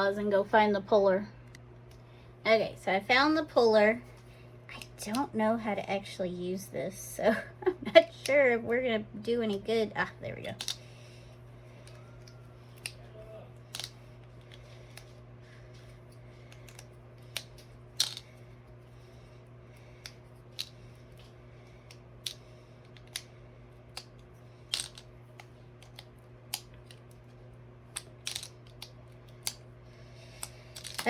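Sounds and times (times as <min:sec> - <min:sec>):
plastic bricks clicking: 0:10.5 - 0:10.8, 0:13.7 - 0:15.1, 0:16.5 - 0:18.3, 0:23.9 - 0:27.1, 0:27.9 - 0:29.6, 0:30.4 - 0:31.0.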